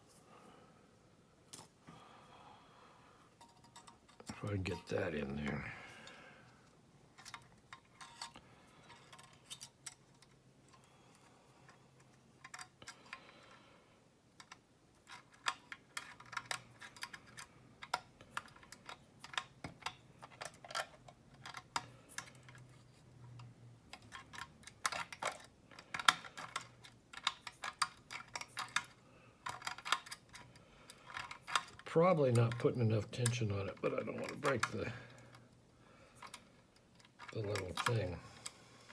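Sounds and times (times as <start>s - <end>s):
faint steady hum: 0.0s - 38.9s
metallic clicks of lock picking: 23.3s - 33.5s.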